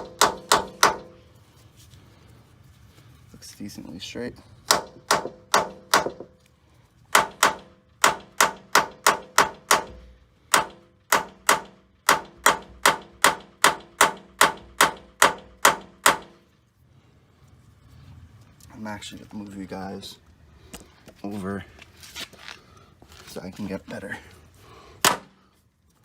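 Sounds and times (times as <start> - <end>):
hammer striking metal punch: 0.0 - 1.2, 4.7 - 6.4, 7.1 - 16.4, 25.0 - 25.4.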